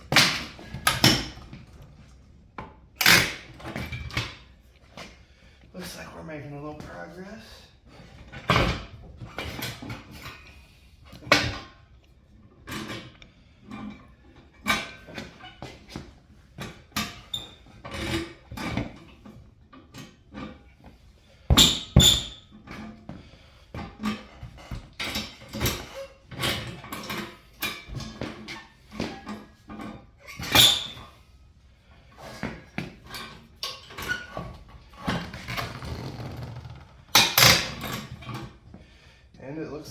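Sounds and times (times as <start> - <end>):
rubber scraping against metal rim: 35.0 - 37.8.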